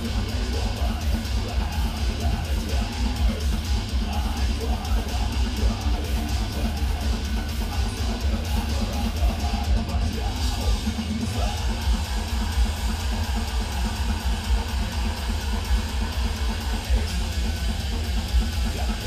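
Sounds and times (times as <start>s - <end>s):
live metal band playing: 0.0s - 19.0s.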